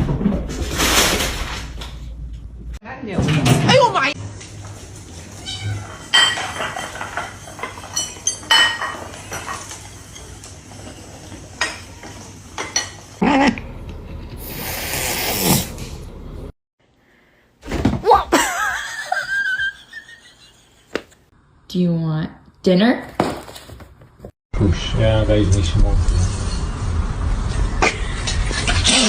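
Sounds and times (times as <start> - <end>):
dishes and cutlery clinking: 4.5 - 13.2.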